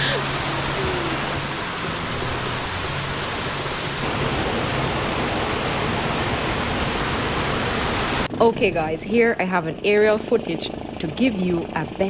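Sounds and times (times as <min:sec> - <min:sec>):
waterfall rushing: 0:00.0 - 0:08.3.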